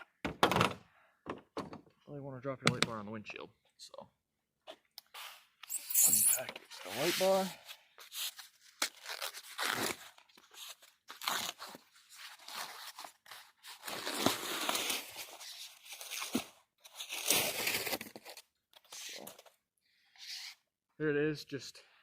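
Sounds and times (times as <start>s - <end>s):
packaging rustling and tearing: 8.1s - 19.5s.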